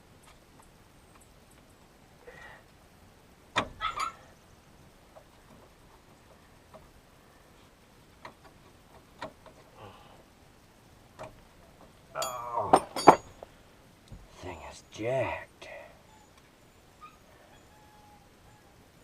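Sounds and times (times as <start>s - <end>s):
metal clank: 12.2s - 13.4s
ratchet and tools clinking: 12.2s - 13.4s.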